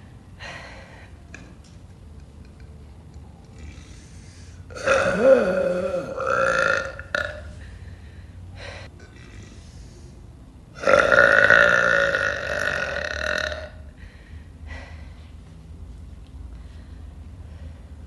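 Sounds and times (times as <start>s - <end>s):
woman burping loudly: 4.7s - 7.5s, 10.8s - 13.8s.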